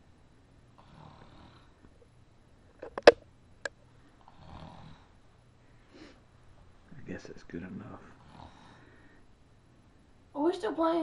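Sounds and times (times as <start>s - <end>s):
man snoring lightly: 0.8s - 1.8s, 4.2s - 5.1s.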